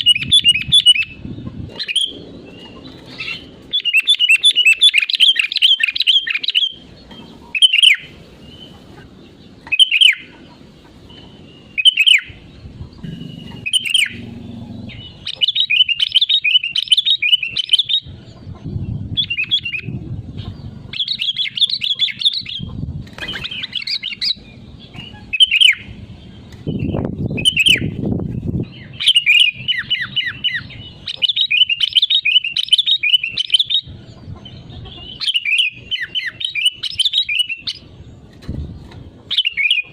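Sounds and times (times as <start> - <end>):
bird singing: 0.0 - 39.9
low rumble: 12.5 - 15.3.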